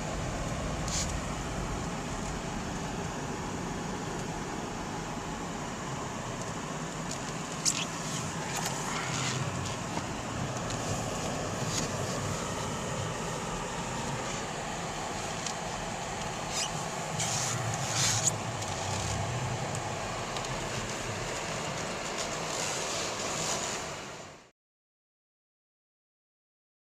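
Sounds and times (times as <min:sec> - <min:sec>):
vehicle driving rumble and hiss: 0:00.0 - 0:24.5.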